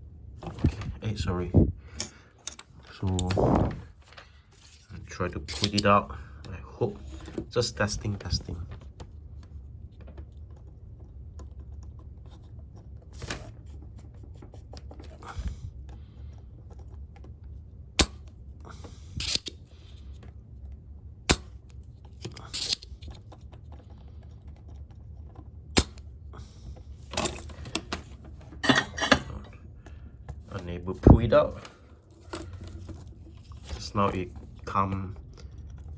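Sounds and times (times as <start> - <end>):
scraping and rustling handling: 0.3 - 35.9
desoldering pump snapping: 4.8 - 6.6, 18.0 - 19.6, 21.2 - 23.2, 25.7 - 26.1.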